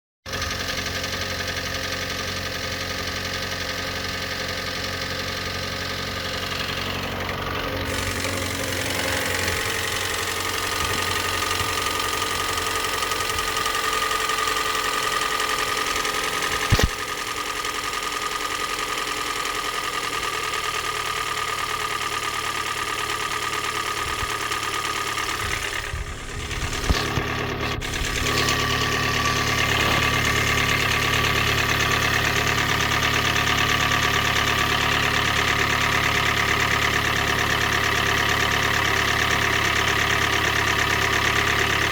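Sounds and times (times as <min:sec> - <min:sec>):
car engine knocking: 0:00.3 - 0:41.9
sharp thump: 0:16.6 - 0:17.1.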